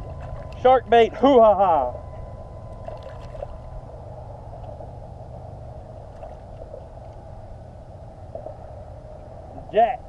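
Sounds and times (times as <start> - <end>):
water lapping and splashes: 0.0 - 1.3, 2.6 - 9.6
low muffled rumble: 0.0 - 10.0.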